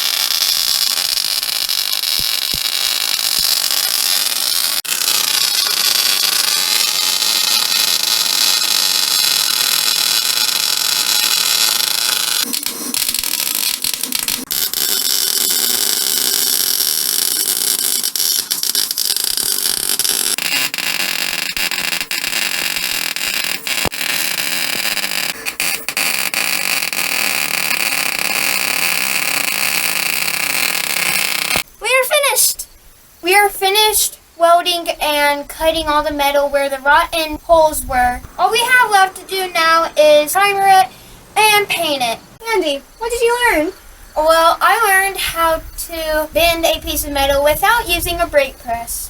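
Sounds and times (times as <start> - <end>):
arc welding crackling hiss: 0.0 - 31.8.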